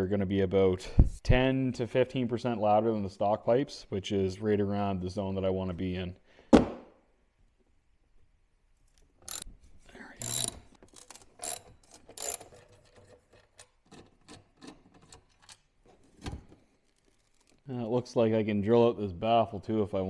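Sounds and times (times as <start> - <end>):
metallic clicks of hand tools: 8.9 - 17.6.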